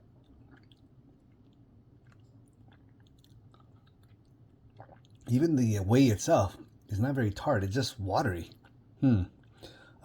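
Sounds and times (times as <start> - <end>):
low room hum: 0.0 - 10.0
mouth clicks and lip smacks: 0.2 - 5.3.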